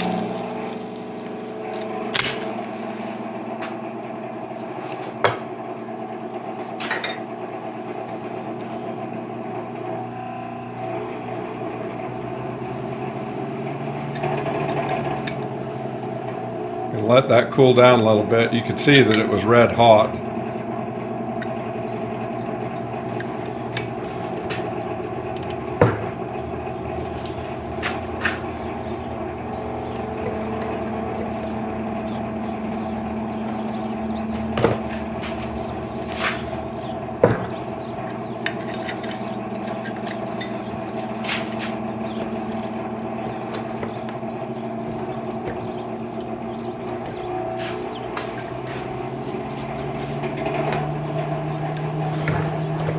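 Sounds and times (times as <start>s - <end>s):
steady machine hum: 0.0s - 52.9s
metal tools clinking and knocking: 6.8s - 7.2s, 37.2s - 44.2s.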